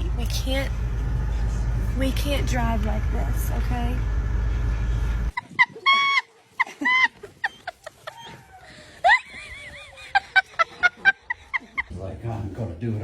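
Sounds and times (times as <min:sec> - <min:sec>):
dog whining: 0:07.3 - 0:08.9.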